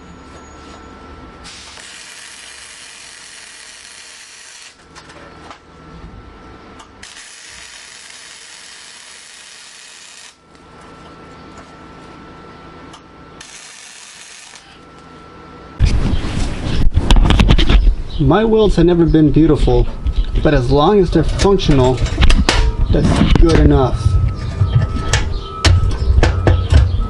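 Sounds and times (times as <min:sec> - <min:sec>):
welding arc crackling: 0:01.4 - 0:04.9, 0:07.0 - 0:10.5, 0:13.4 - 0:14.8.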